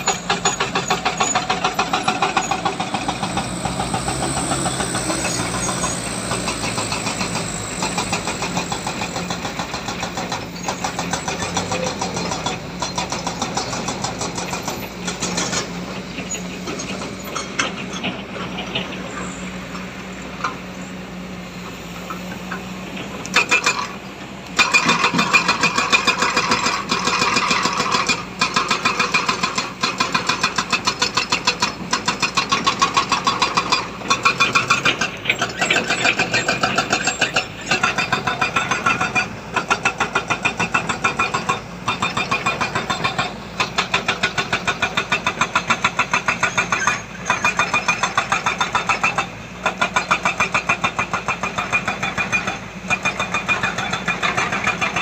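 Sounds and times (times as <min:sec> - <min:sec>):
diesel machinery engine humming: 0:00.0 - 0:55.0.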